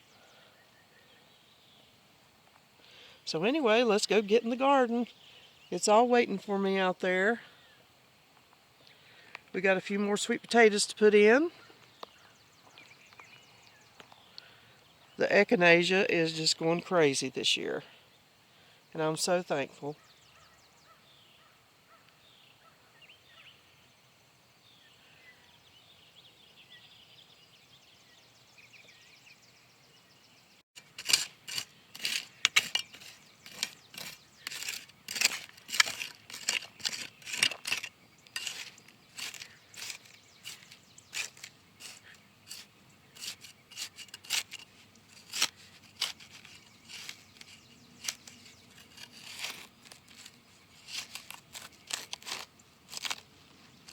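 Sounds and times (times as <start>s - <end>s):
faint bird chirps: 19.8s - 30.6s.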